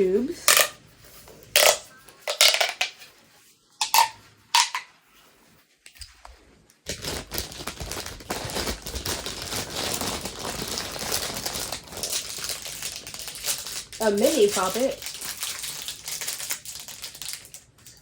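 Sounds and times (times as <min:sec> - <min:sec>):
plastic packaging crinkling: 0:06.8 - 0:18.0.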